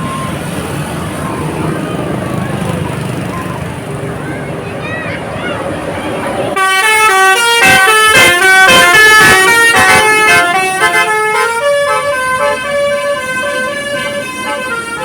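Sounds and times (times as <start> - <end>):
multi-tone bus horn melody: 6.5 - 15.0.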